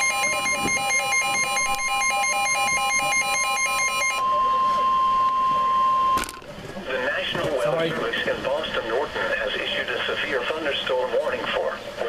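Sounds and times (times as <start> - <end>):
rapid pulsing electronic beep: 0.0 - 6.2
steady alarm tone: 0.0 - 6.4.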